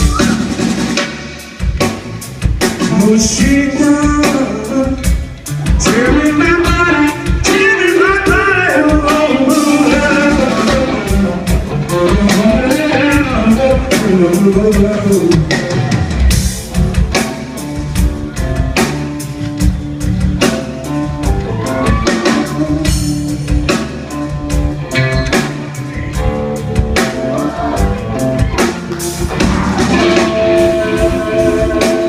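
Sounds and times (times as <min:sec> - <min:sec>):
live rock band playing: 0:00.0 - 0:32.0
person singing: 0:02.8 - 0:16.4, 0:21.2 - 0:23.4, 0:27.0 - 0:32.0.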